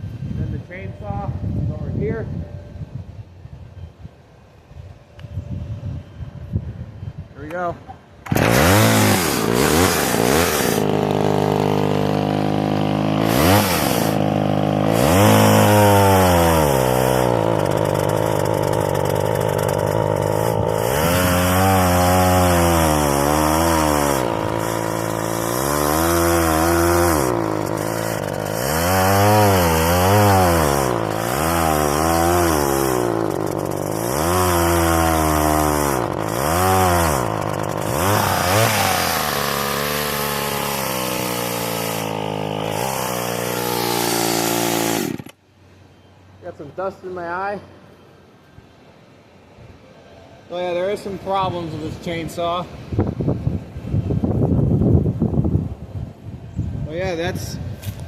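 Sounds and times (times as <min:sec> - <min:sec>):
chainsaw revving: 0:08.2 - 0:45.4.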